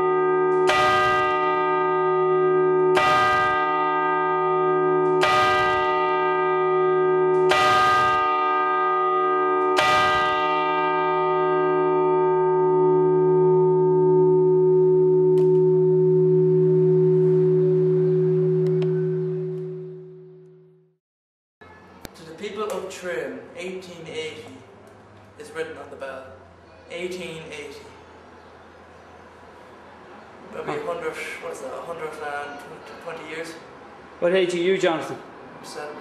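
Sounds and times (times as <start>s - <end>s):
church bell tolling: 0.0s - 20.8s
bell humming: 0.0s - 20.9s.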